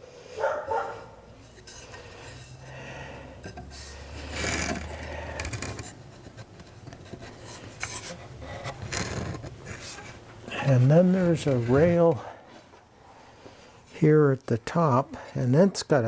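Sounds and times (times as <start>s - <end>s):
wooden parts scraping: 1.3s - 12.3s.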